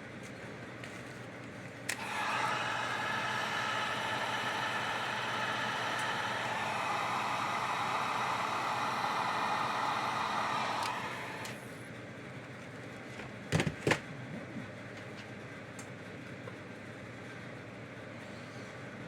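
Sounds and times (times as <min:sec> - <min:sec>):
heat gun whirring hiss: 0:01.9 - 0:11.8
heat gun switch click: 0:05.8 - 0:06.3, 0:10.7 - 0:11.6.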